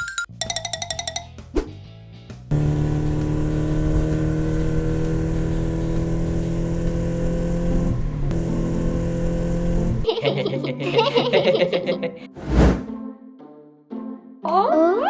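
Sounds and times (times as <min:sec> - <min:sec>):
vehicle engine running: 0:02.5 - 0:10.1.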